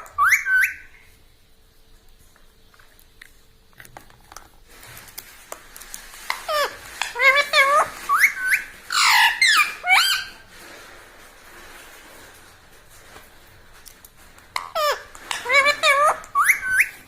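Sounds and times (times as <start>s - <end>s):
parrot calling: 0.0s - 1.0s, 6.2s - 10.5s, 14.6s - 17.0s.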